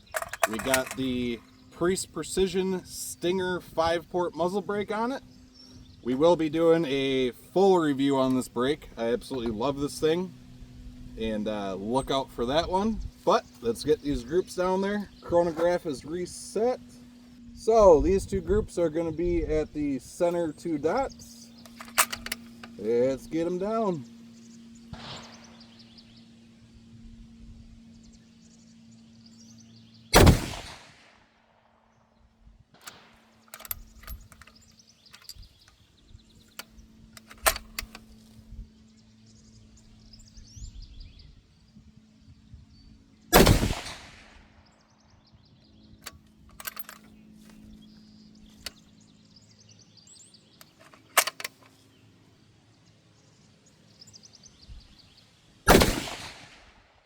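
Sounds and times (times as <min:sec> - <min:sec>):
rifle shots: 0:30.2 - 0:31.2, 0:43.4 - 0:44.5, 0:55.7 - 0:56.8.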